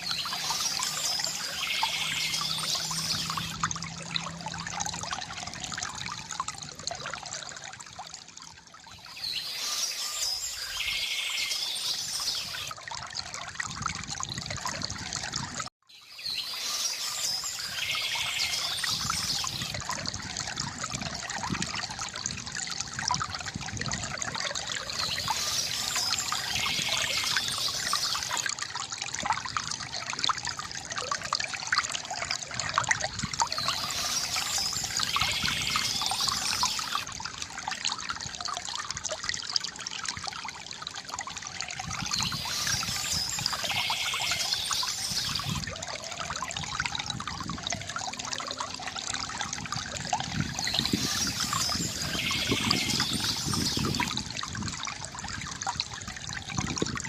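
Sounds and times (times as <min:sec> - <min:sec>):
small birds chirping: 0:00.0 - 0:03.5, 0:42.0 - 0:45.6, 0:50.5 - 0:54.1
stream water gurgling over stones: 0:00.0 - 0:57.0.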